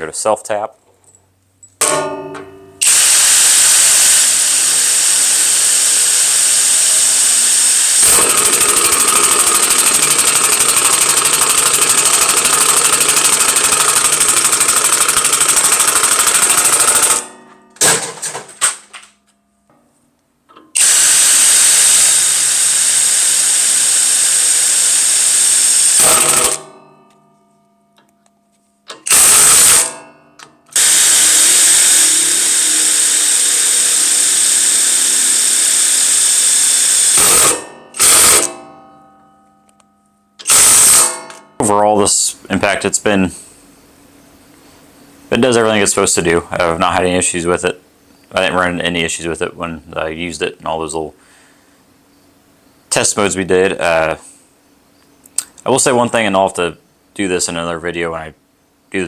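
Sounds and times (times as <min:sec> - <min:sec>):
impact driver hammering screws: 0:02.8 - 0:18.2, 0:20.8 - 0:26.7, 0:29.0 - 0:30.0, 0:30.7 - 0:38.6, 0:40.4 - 0:41.4.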